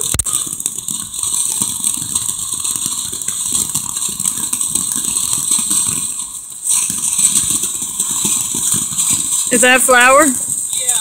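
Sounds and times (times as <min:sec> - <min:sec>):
firework fountain hissing and crackling: 0:00.0 - 0:11.0.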